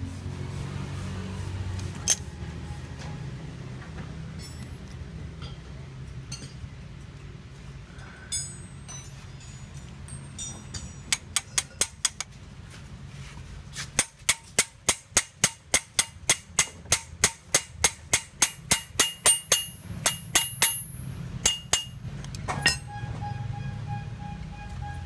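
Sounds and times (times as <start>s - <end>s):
hammer striking metal: 8.2s - 12.2s, 14.0s - 24.0s.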